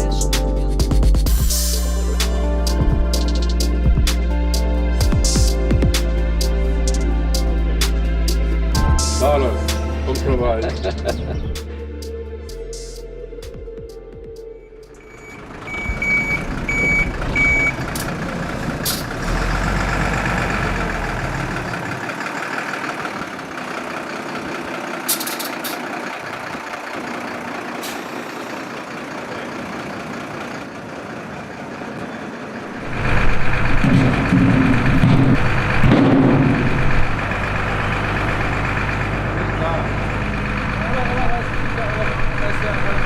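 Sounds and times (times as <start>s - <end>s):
heavy vehicle engine running: 0.0s - 43.0s
reversing alarm beeping: 14.6s - 17.8s.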